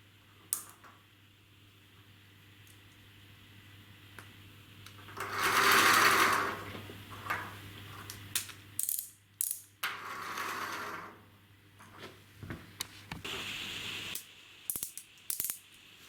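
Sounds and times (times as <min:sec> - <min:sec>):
wind-up toy gears whirring: 0:14.7 - 0:15.6.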